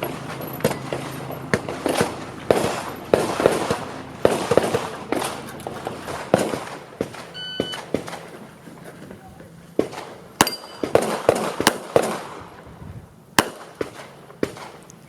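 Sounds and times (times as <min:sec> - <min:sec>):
short electronic beep: 0:07.3 - 0:07.8
handgun shots: 0:09.9 - 0:12.3.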